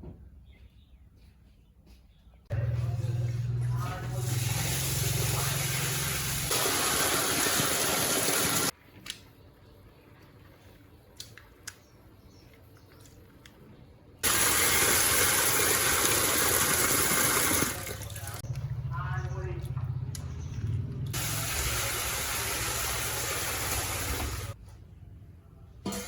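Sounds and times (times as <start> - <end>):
low hum: 2.5 - 6.5
tap water running: 2.7 - 8.8, 14.2 - 18.6, 21.1 - 24.6.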